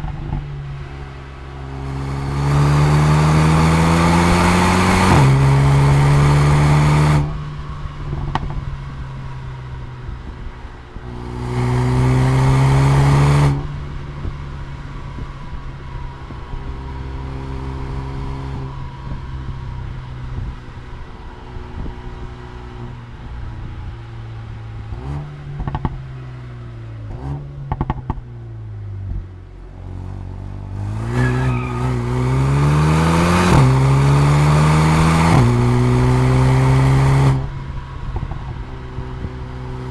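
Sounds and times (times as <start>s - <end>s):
exhaust crackles and pops: 0.0s - 1.4s, 7.1s - 11.6s, 24.8s - 26.4s, 27.1s - 30.1s, 35.0s - 39.9s
car engine revving: 0.0s - 39.9s.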